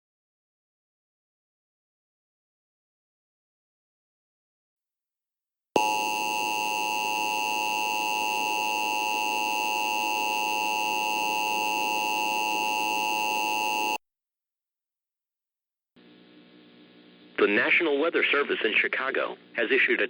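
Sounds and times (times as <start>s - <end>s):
electronic alert tone: 5.8s - 14.0s.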